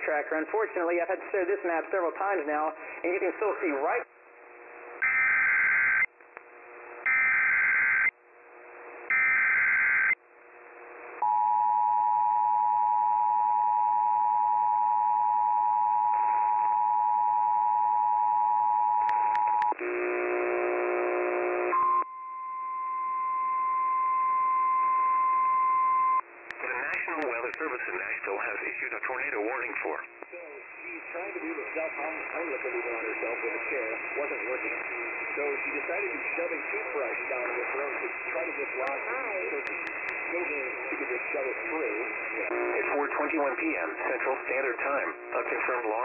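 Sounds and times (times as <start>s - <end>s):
buzzy tone: 4.8s - 6.1s, 6.8s - 11.2s, 42.2s - 43.0s
screeching data bursts: 5.0s - 6.1s, 7.0s - 8.1s, 9.1s - 10.2s
steady alarm tone: 5.0s - 6.1s, 7.0s - 8.1s, 9.1s - 10.2s.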